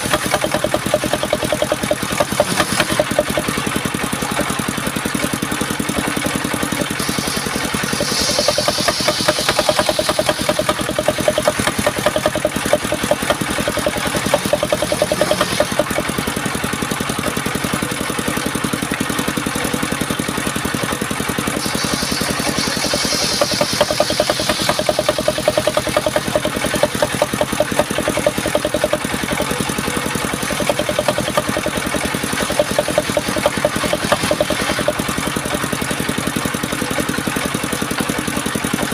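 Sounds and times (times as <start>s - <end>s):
saw blade cutting wood: 0.0s - 4.7s, 5.3s - 17.4s, 21.4s - 37.4s
engine-driven circular saw running: 0.0s - 38.9s.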